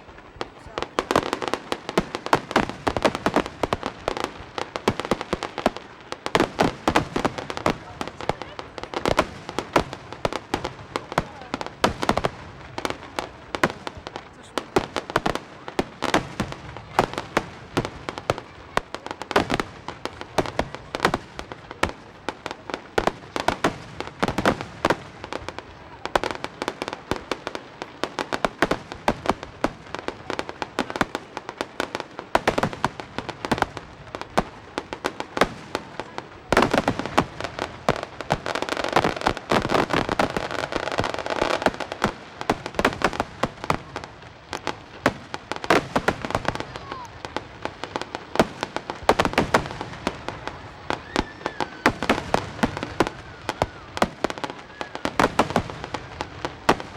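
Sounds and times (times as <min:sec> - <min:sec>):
fireworks bangs and crackles: 0:00.0 - 0:56.9.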